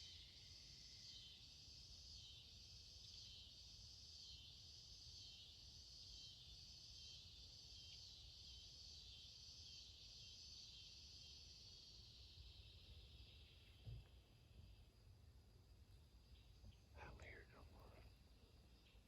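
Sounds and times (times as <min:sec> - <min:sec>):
night insects shrilling: 0:00.0 - 0:13.8.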